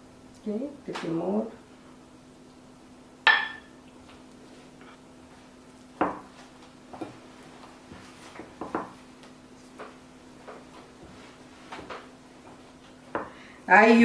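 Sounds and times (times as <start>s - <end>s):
faint steady hum: 0.0s - 14.0s
mixing bowl knocks and taps: 8.4s - 9.0s.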